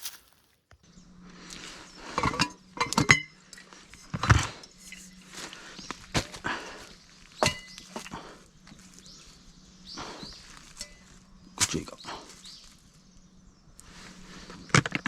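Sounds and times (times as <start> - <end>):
metal camp gear clinking: 0.0 - 0.4.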